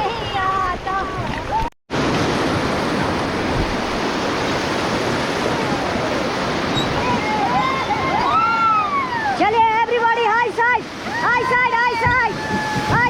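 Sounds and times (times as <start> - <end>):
wind buffeting microphone: 0.0 - 13.0
river rapids rushing: 2.0 - 13.0.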